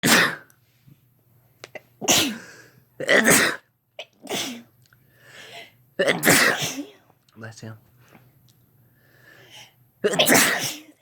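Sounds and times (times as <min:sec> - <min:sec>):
person sneezing: 0:00.0 - 0:00.5, 0:02.0 - 0:03.6, 0:04.2 - 0:04.7, 0:06.0 - 0:07.0, 0:10.0 - 0:11.0.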